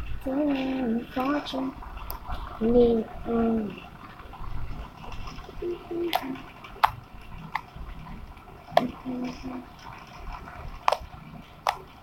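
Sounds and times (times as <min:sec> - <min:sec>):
slime squishing with wet pops: 0:10.8 - 0:12.0.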